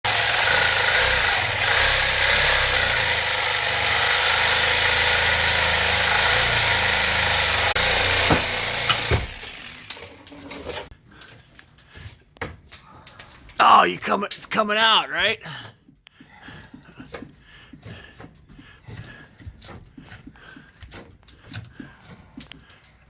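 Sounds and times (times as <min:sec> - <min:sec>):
power tool running: 0:00.1 - 0:10.9.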